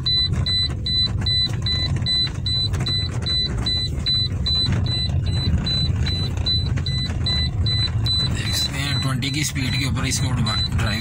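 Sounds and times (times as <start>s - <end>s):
car engine and road noise: 0.0s - 11.0s
electronic warning beep: 0.0s - 11.0s.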